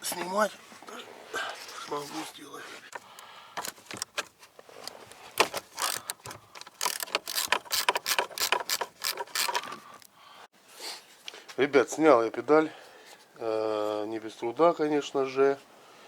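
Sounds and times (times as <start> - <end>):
ratchet wrench clicking: 5.7 - 10.1.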